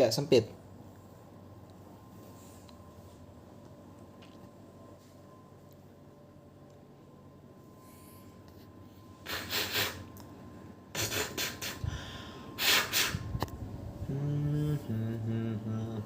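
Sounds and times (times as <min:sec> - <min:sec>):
person breathing heavily: 0:11.0 - 0:13.2.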